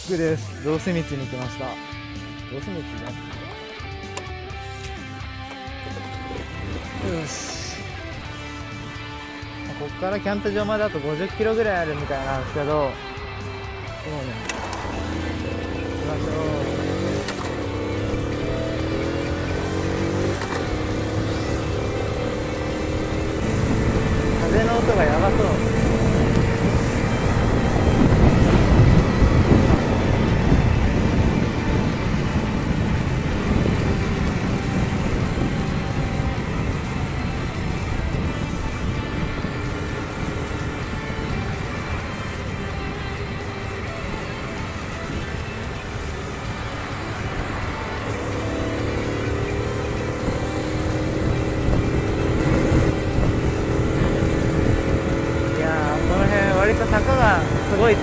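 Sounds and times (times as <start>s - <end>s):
motorcycle engine running: 0.0s - 58.0s
wind buffeting microphone: 22.8s - 46.0s, 49.9s - 58.0s.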